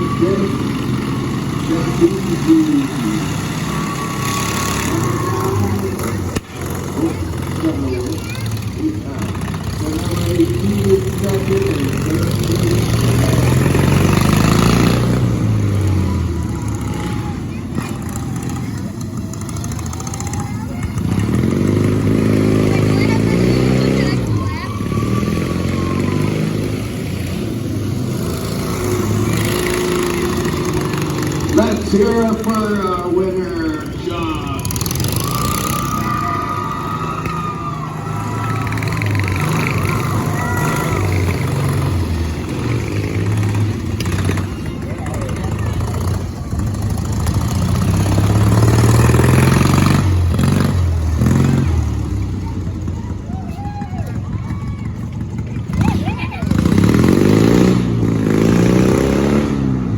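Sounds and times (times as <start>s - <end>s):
lawn mower engine running: 0.0s - 59.9s.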